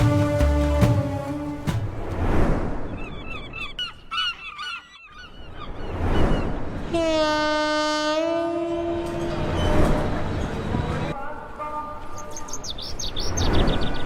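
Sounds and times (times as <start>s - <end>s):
gulls squawking: 3.0s - 5.9s.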